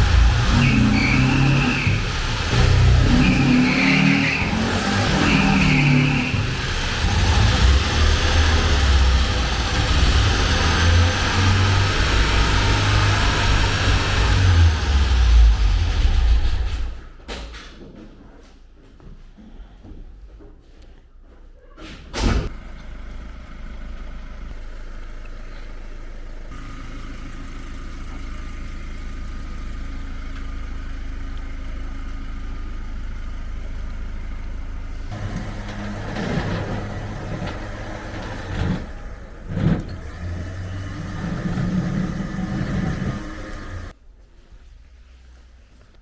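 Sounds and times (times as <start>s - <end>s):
car engine running: 0.0s - 16.6s, 22.5s - 44.0s
engine throttle blips: 22.5s - 44.0s.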